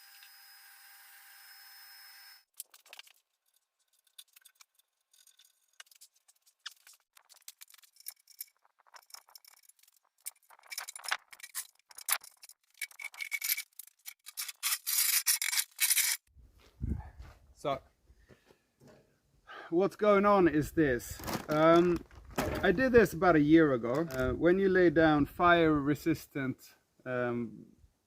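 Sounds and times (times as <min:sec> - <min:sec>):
scraping and rubbing strokes: 0:02.6 - 0:16.3.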